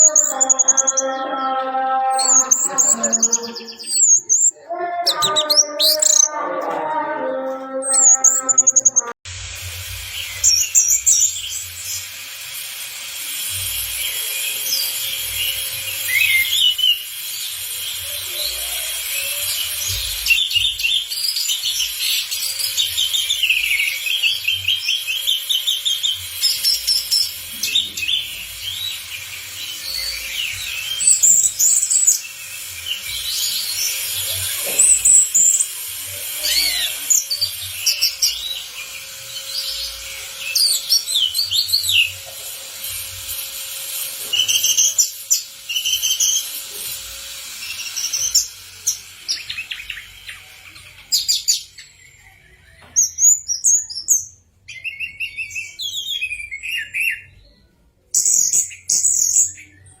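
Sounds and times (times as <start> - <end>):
thrush singing whistled phrases: 0.0 - 9.2, 10.0 - 57.4.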